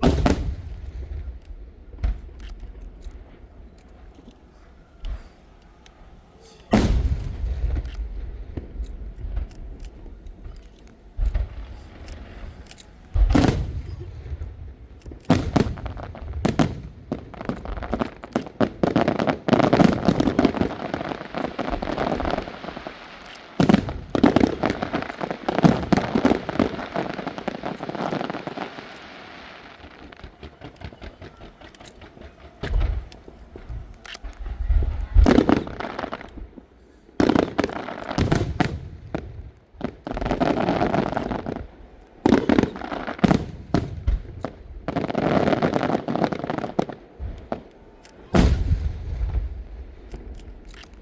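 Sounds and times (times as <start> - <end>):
fireworks booming: 0.0 - 51.0
fireworks crackling: 0.0 - 51.0.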